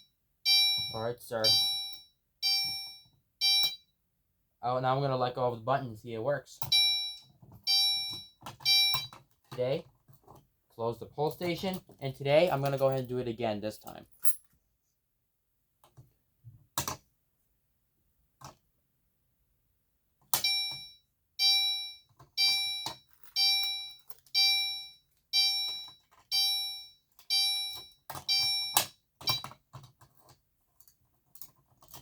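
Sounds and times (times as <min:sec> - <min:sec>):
fire alarm pulsed chime tone: 0:00.0 - 0:03.9, 0:06.7 - 0:09.1, 0:20.4 - 0:29.4.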